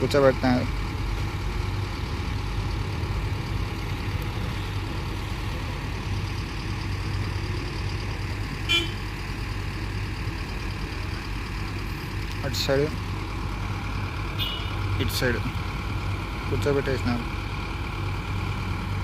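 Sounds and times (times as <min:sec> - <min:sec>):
heavy vehicle engine running: 0:00.0 - 0:19.0
short horn toot: 0:08.7 - 0:09.0, 0:14.4 - 0:14.7.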